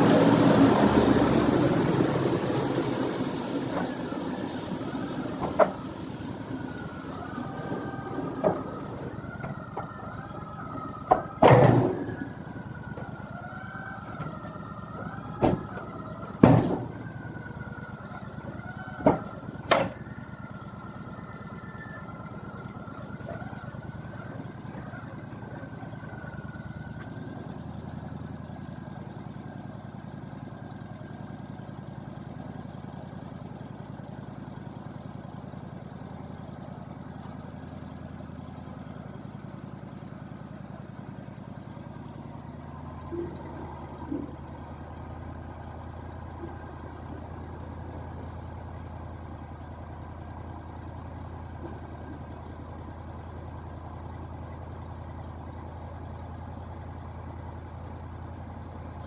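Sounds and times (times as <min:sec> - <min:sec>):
machine whining: 0:00.0 - 0:27.2
sharp knocks and bangs: 0:14.1 - 0:17.1.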